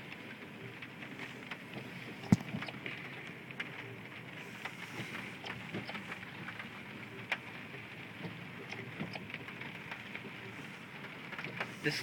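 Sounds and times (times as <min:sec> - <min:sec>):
rain drops tapping on car roof: 0:00.0 - 0:12.0.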